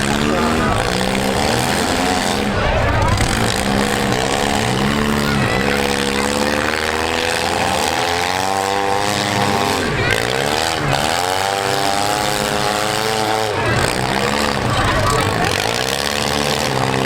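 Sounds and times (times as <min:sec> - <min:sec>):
car engines revving hard: 0:00.0 - 0:17.0.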